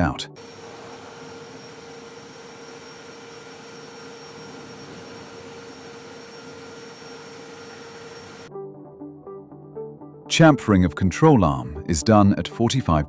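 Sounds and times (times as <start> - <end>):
machine hiss and hum: 0.4 - 8.5.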